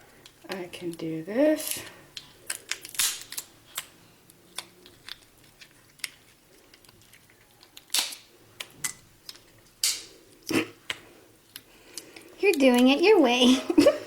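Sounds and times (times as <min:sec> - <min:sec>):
lobster shell cracking: 0:01.6 - 0:12.9.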